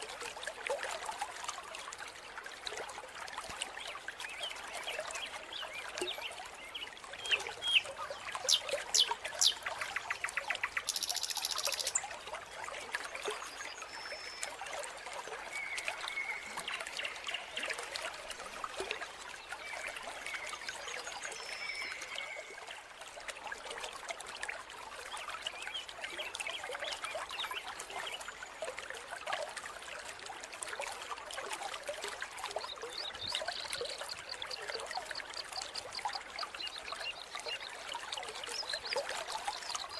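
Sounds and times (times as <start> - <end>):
stream water trickling and splashing: 0.0 - 39.9.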